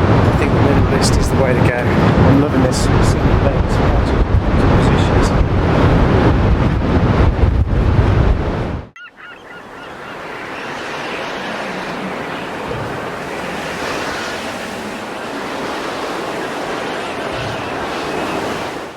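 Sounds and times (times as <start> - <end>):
wind buffeting microphone: 0.0 - 9.0, 9.6 - 18.9
surf breaking: 0.0 - 18.9
short bird calls: 9.0 - 14.3.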